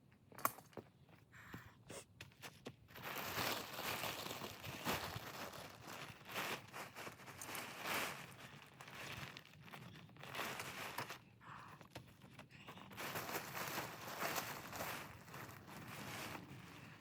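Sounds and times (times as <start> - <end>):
material rustling and crinkling: 2.5 - 17.0.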